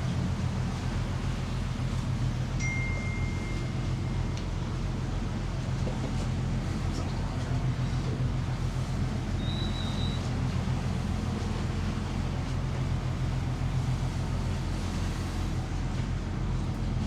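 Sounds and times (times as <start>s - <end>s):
short high beep: 2.6s - 4.1s.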